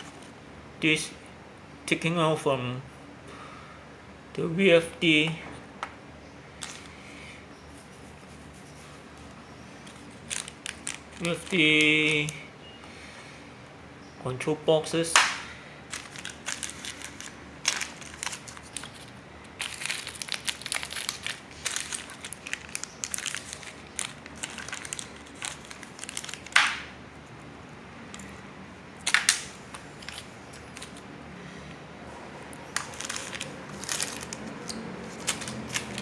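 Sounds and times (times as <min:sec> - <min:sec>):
parts and wrapping rustling: 0:00.0 - 0:00.4, 0:06.6 - 0:12.4, 0:15.2 - 0:31.8, 0:32.4 - 0:36.0.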